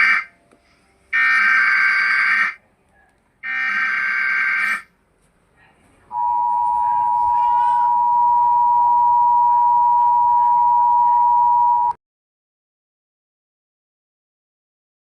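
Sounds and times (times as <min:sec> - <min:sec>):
two-tone alert tone: 0:06.1 - 0:12.0.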